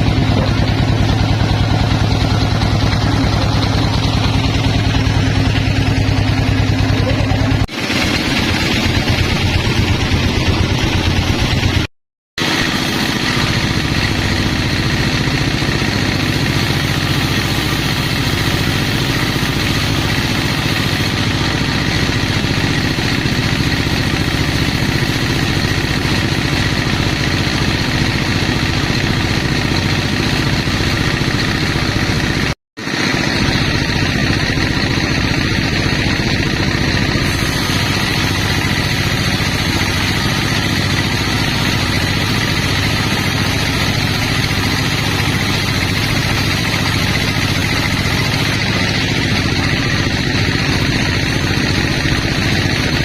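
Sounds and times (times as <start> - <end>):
sawmill machinery humming: 0.0 - 53.0.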